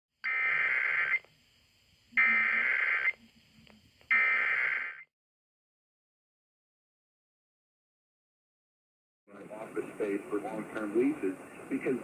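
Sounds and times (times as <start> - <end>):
digital data tone bursts: 0.3 - 1.3, 2.2 - 3.2, 4.1 - 5.0.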